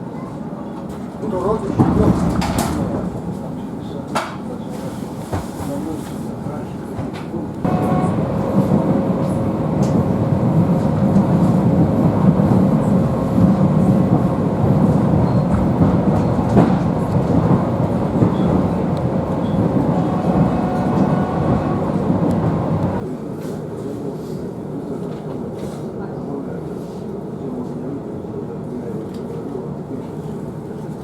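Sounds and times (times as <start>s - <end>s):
train wheels rumbling: 0.8s - 6.0s, 7.0s - 23.0s.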